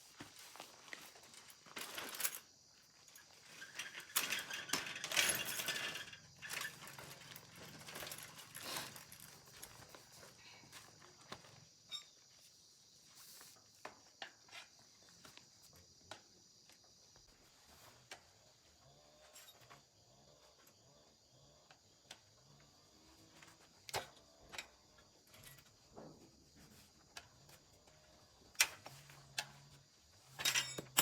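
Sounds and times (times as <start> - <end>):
hand tools clinking on metal: 3.5 - 9.7, 30.4 - 31.0.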